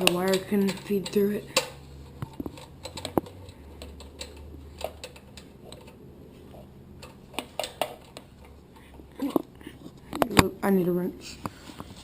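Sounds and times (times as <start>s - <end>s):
small metal parts clicking: 0.0s - 6.0s.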